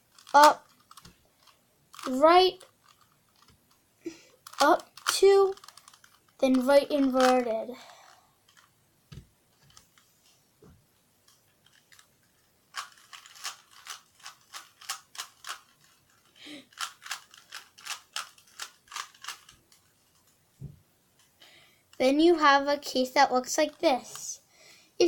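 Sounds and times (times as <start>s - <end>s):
puzzle cube plastic clicks: 0.0s - 8.8s, 11.3s - 20.4s.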